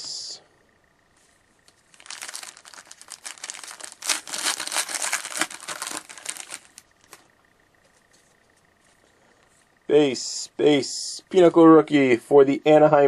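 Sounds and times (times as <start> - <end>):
foil wrapper crinkling: 1.7 - 7.2.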